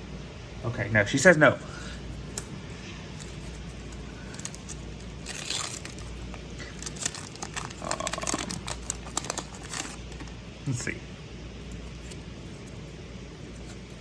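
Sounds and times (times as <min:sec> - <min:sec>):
wax paper wrapper crinkling and tearing: 0:03.2 - 0:10.4.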